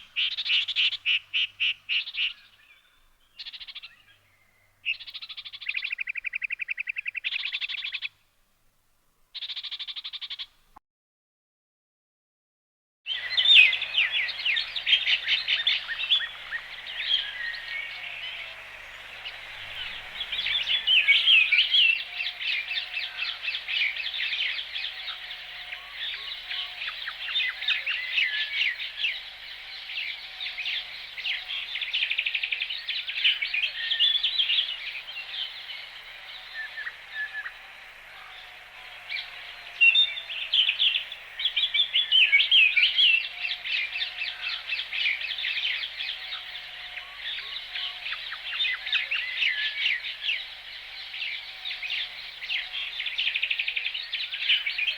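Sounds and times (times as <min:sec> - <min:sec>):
songbirds chirping and trilling: 0:00.0 - 0:08.3, 0:09.2 - 0:10.6, 0:13.1 - 0:54.9
low bird call: 0:13.1 - 0:54.9.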